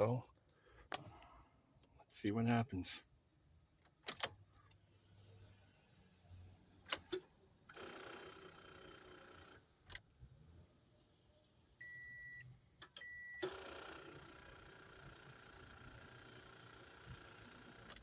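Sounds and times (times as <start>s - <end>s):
electronic warning chime beeps: 11.8s - 12.4s.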